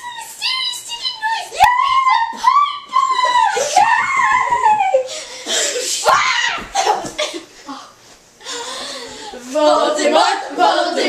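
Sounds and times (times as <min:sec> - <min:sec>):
women shrieking and laughing: 0:01.8 - 0:07.4
women singing high: 0:09.4 - 0:11.0.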